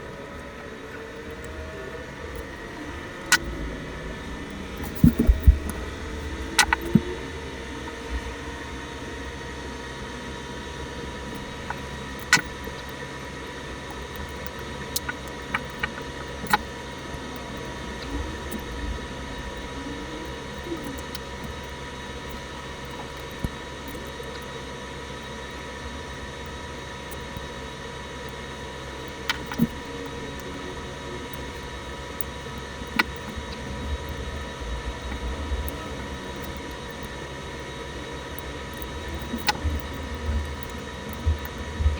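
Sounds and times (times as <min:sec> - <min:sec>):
steady low hum: 0:00.0 - 0:41.9
small tools clicking on metal: 0:28.2 - 0:37.6, 0:38.2 - 0:41.7.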